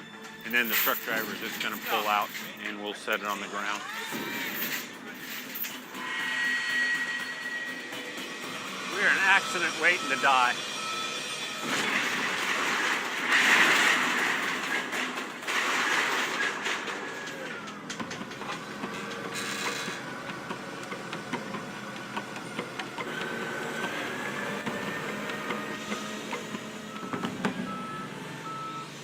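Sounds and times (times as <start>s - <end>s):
mechanical din with rattles and clanks: 10.7s - 27.9s.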